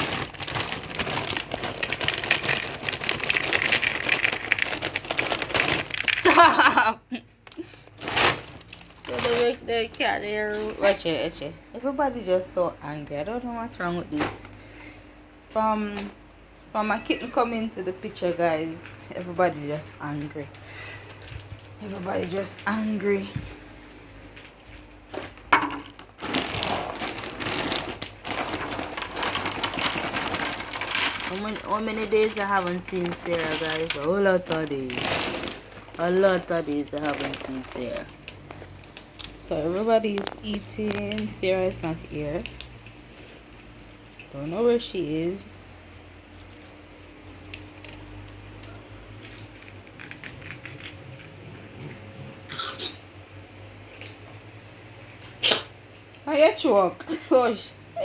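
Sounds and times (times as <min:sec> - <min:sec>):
cats crunching dry kibble: 0:00.0 - 0:06.4, 0:07.5 - 0:09.6, 0:20.3 - 0:22.4, 0:25.1 - 0:44.3, 0:46.4 - 0:51.6.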